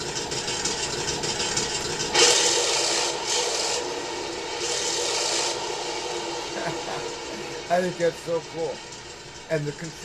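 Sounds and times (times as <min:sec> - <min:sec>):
toy tank engine sound from speaker: 0:02.1 - 0:10.0.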